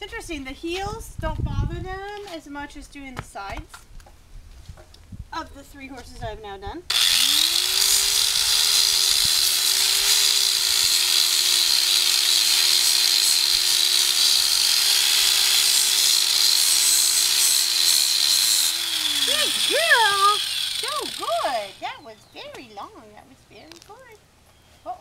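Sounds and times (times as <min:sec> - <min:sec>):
angle grinder grinding hoof: 0:06.9 - 0:21.8.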